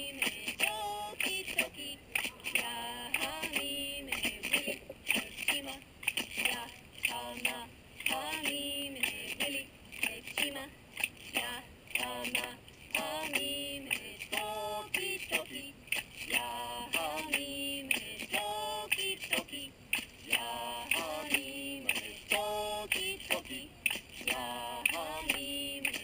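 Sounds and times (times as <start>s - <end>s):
person chanting: 0.0s - 10.7s, 11.4s - 26.0s.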